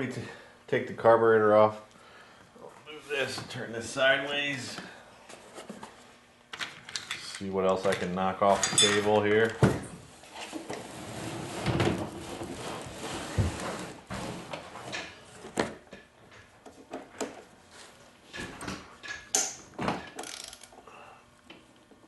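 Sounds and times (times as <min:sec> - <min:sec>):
tools knocking and scraping: 0:06.6 - 0:10.8.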